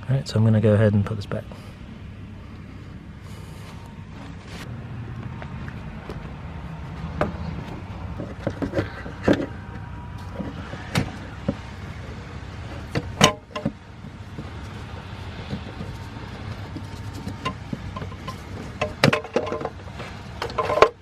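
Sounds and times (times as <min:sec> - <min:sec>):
low background rumble: 0:00.0 - 0:21.0
oil filter cap clicking and knocking: 0:12.9 - 0:13.8, 0:14.4 - 0:21.0.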